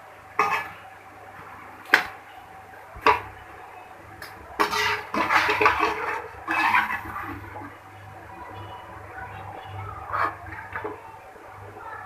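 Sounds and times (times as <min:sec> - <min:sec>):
clattering and scraping: 0:04.6 - 0:07.7.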